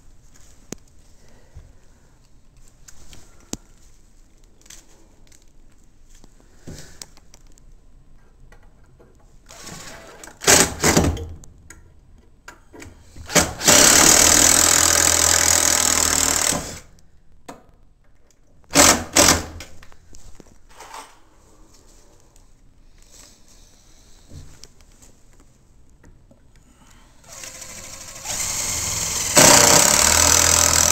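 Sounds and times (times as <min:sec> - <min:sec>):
handheld power tool running: 0:13.4 - 0:16.8, 0:27.3 - 0:30.9.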